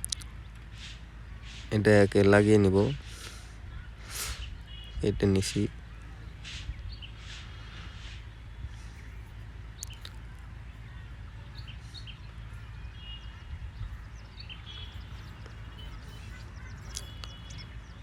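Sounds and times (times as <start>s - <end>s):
small birds chirping: 0.0s - 18.0s
steady low hum: 0.0s - 18.0s
light clicks: 9.8s - 10.2s.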